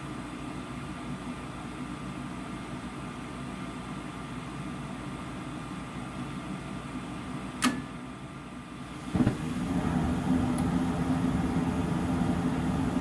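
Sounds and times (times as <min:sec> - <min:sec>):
inducer fan humming: 0:00.0 - 0:13.0
gas flame burning: 0:08.8 - 0:13.0
burners igniting with soft thump: 0:09.0 - 0:13.0.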